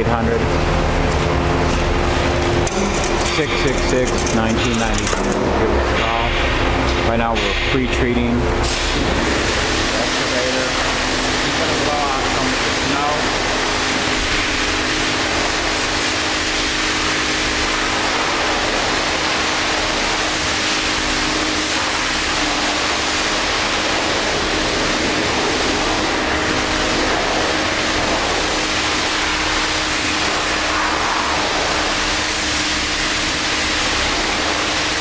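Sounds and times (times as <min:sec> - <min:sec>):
low machine hum: 0:00.0 - 0:35.0.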